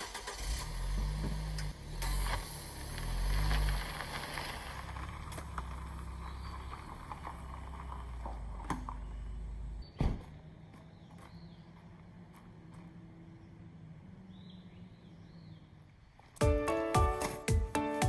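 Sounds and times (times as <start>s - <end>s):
car engine revving and idling: 0.0s - 16.2s
loud thump: 10.0s - 10.3s.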